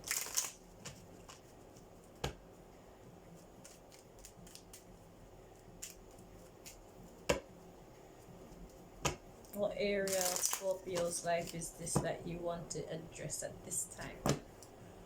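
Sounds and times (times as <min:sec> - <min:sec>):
cards rustling: 0:05.6 - 0:06.8, 0:10.0 - 0:12.0.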